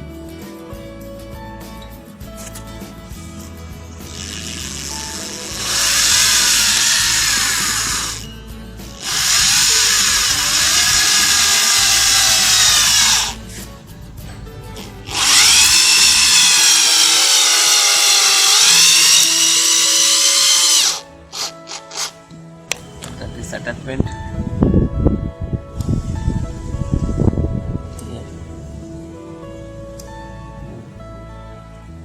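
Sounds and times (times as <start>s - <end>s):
power screwdriver motor whining: 4.0s - 8.3s, 9.0s - 13.4s, 15.1s - 22.2s.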